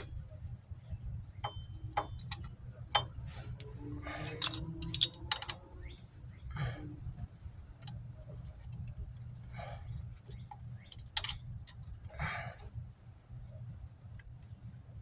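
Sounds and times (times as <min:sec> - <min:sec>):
steady low rumble: 0:00.0 - 0:15.0
metallic clicks of brake parts: 0:01.3 - 0:06.0, 0:07.7 - 0:12.1.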